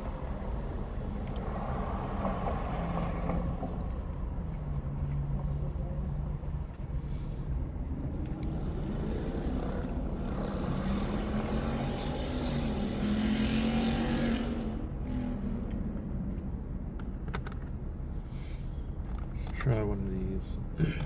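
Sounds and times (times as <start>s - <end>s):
vehicle engine passing by: 0.0s - 16.6s.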